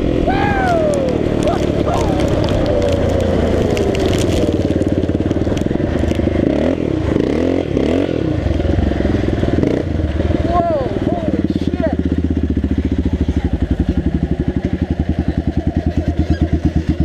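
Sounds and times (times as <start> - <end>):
quad engine running: 0.0 - 17.0
crackles and clatter: 0.3 - 6.5.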